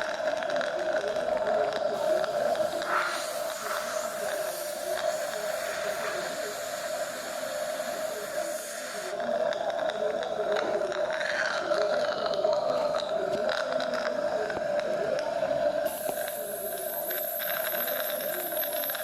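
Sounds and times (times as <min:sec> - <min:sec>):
dental equipment hum: 0:01.1 - 0:19.0
dental equipment hiss: 0:02.0 - 0:09.2, 0:15.8 - 0:19.0.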